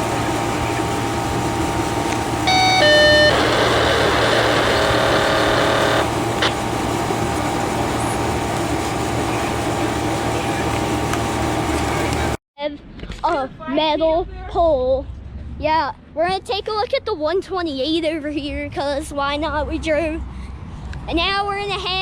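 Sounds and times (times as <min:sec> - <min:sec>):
loud noisy tonal sound: 0:00.0 - 0:10.7
diesel fire engine idling: 0:00.0 - 0:12.4
short electronic tones: 0:02.4 - 0:06.8.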